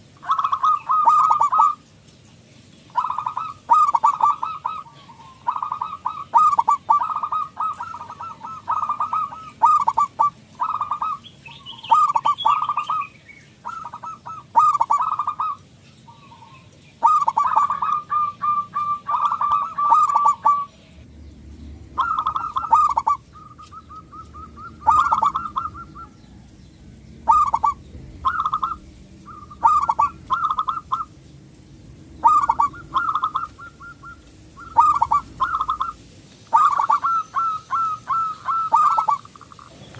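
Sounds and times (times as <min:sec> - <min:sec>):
dove cooing: 0:00.0 - 0:01.9, 0:02.9 - 0:21.0, 0:21.9 - 0:31.2, 0:32.1 - 0:39.9.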